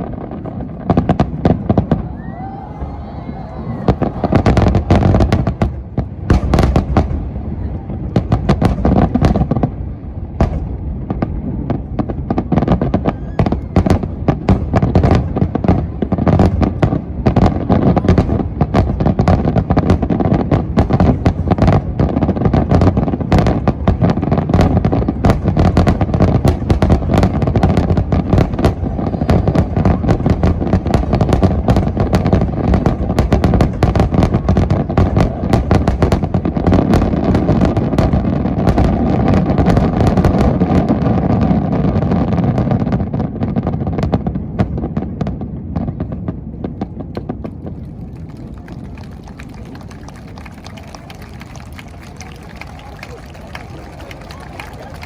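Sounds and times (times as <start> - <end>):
sharp firework cracks: 0.0 - 7.4, 8.1 - 43.0.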